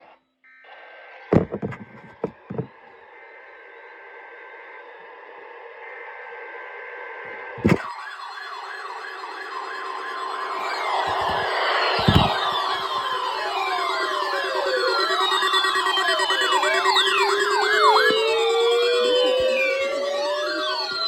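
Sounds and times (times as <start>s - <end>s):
knocks: 1.4s - 2.7s, 11.1s - 12.5s
sharp thump: 1.4s - 2.7s, 7.6s - 7.8s, 11.0s - 12.6s
siren yelping: 1.4s - 2.7s, 7.6s - 21.0s.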